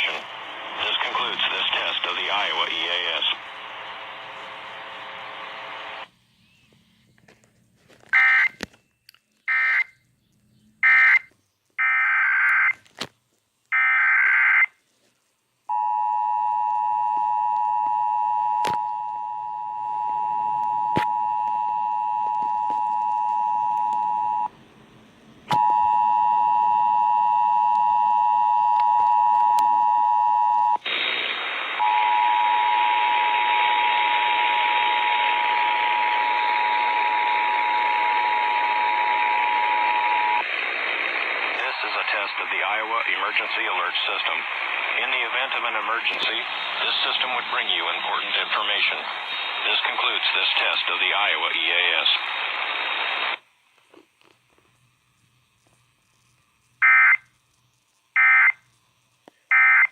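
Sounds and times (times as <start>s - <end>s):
loud radio hiss: 0.0s - 6.1s, 30.8s - 54.1s.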